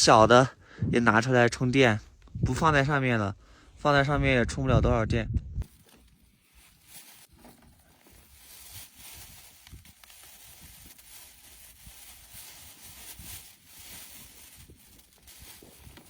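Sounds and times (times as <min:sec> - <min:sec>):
faint rustling: 0:05.6 - 0:16.0.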